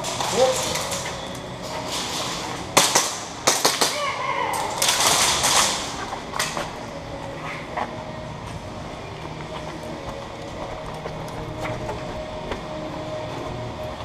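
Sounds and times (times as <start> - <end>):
noisy rush: 0.0 - 14.0
airsoft guns firing: 2.8 - 6.0.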